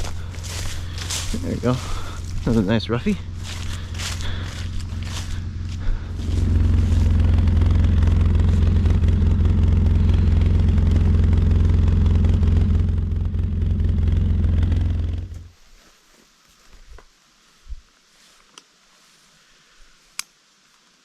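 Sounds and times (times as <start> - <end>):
vehicle engine low drone: 0.0 - 15.5.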